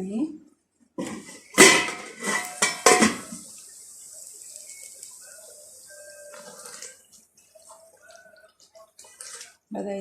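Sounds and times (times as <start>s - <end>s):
steady hiss: 1.1s - 7.0s.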